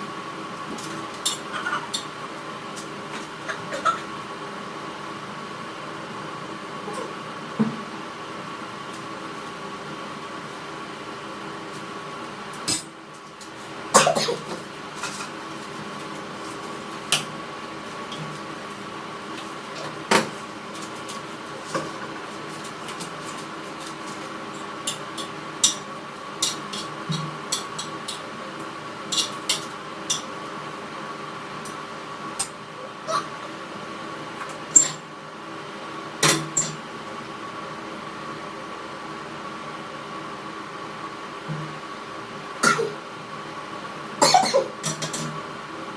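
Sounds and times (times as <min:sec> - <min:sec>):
background hum: 0:00.0 - 0:05.2
steady background hum: 0:00.0 - 0:45.9
person coughing: 0:14.0 - 0:14.6, 0:42.6 - 0:43.0, 0:44.2 - 0:44.8.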